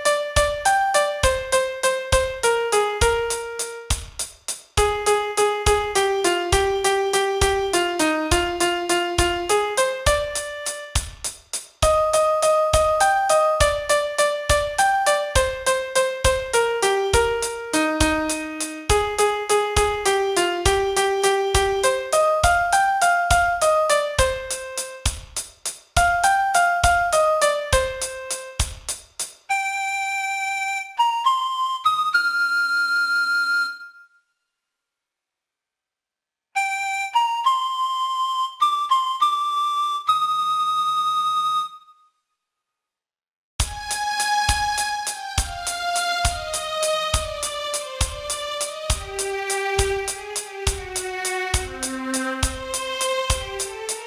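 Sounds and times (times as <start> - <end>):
piano melody: 0.0 - 4.0, 4.8 - 11.0, 11.8 - 25.1, 26.0 - 28.6, 44.5 - 54.0
pulsing beat: 0.1 - 29.0, 43.6 - 54.0.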